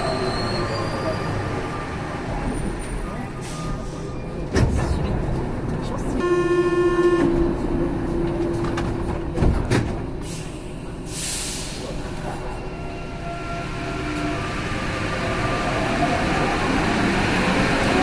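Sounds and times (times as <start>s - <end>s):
tone: 6.2s - 7.4s
hiss of air: 10.3s - 11.9s.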